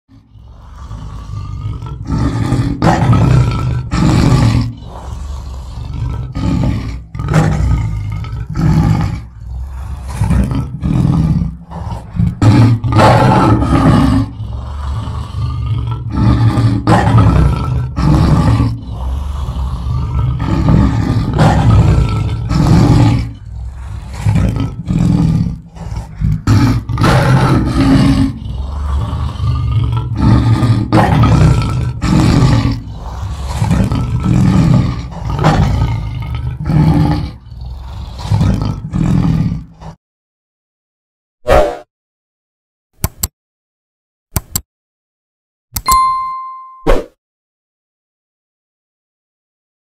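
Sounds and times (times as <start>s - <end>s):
lion roaring and growling: 0.1s - 40.0s.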